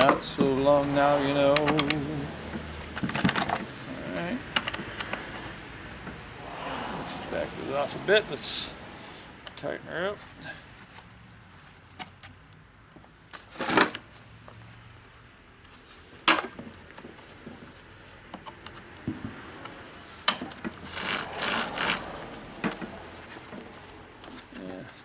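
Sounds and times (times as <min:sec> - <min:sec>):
chain scraping on metal bar: 0:20.4 - 0:24.4.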